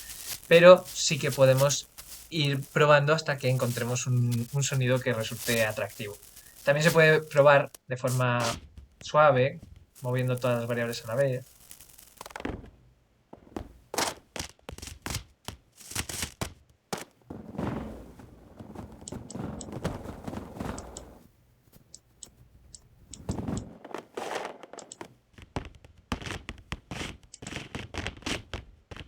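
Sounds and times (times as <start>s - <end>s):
synthetic footstep clicks and thuds: 12.2s - 29.0s
scraping dragging sounds: 17.3s - 21.2s.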